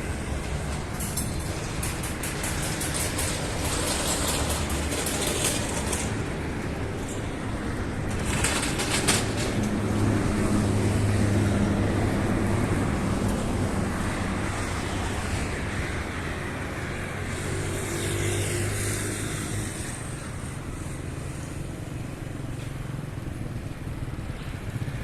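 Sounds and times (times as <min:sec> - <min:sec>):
street traffic: 0:00.0 - 0:25.0.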